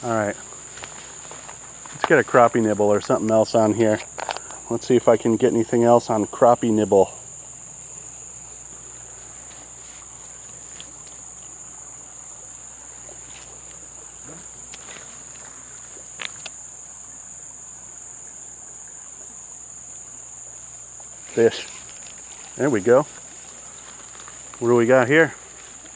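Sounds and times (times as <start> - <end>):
insects droning: 0.0 - 25.9
faint clicks: 4.0 - 4.6, 14.7 - 16.6.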